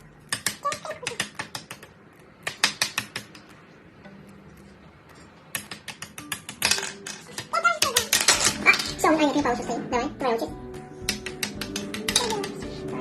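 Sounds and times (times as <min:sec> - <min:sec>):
plastic toy ratchet clicking: 0:11.0 - 0:12.6.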